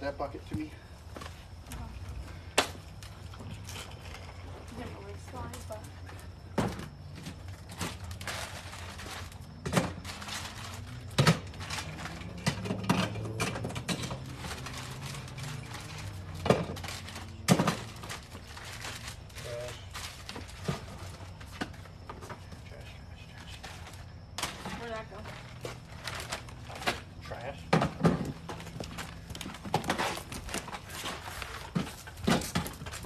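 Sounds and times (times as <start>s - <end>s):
knocks and thuds of objects handled: 6.5s - 22.6s, 25.6s - 33.0s.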